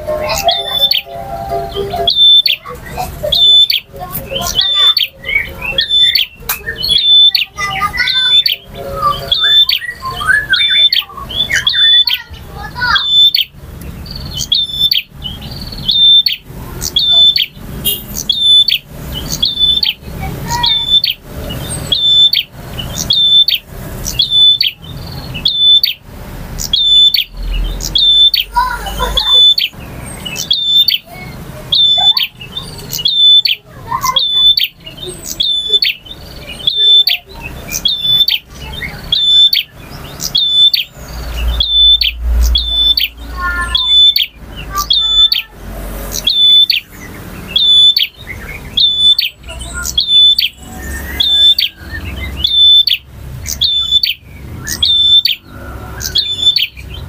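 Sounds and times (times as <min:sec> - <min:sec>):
bird call with sharp high notes: 0:00.0 - 0:13.6, 0:14.4 - 0:21.2, 0:21.8 - 0:24.8, 0:25.4 - 0:26.0, 0:26.6 - 0:45.5, 0:46.1 - 0:56.8.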